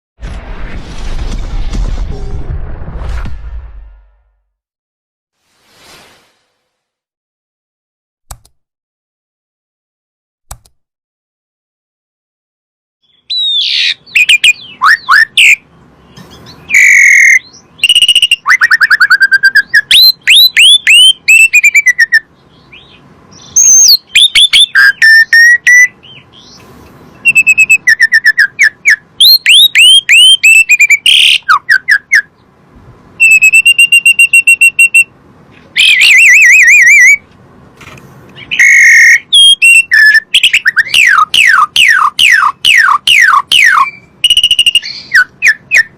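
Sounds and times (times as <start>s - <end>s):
starling singing: 13.0s - 32.5s, 35.8s - 37.2s, 38.4s - 45.9s.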